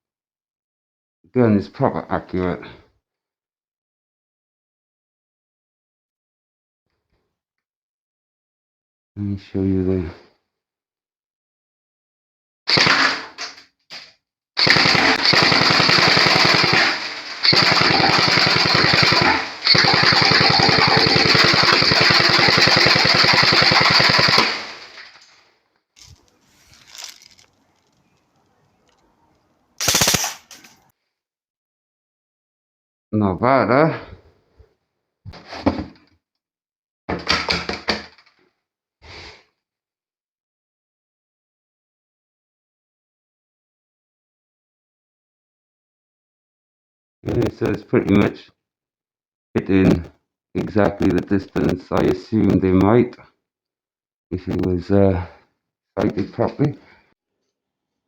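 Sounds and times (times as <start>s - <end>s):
airsoft rifle firing bursts: 12.7s - 13.3s, 14.6s - 25.1s, 29.8s - 30.5s.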